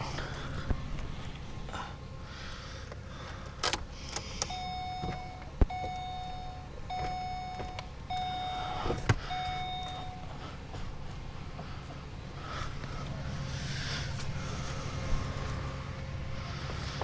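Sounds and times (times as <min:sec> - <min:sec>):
electronic warning beeps: 0:04.4 - 0:10.5.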